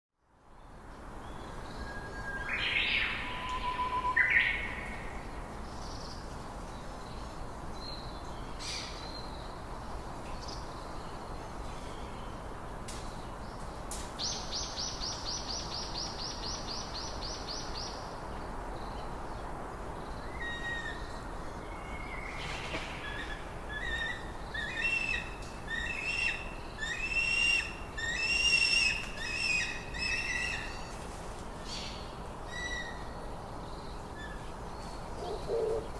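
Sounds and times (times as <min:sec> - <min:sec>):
steady background hiss: 0:00.2 - 0:35.9
birds calling: 0:34.2 - 0:35.9.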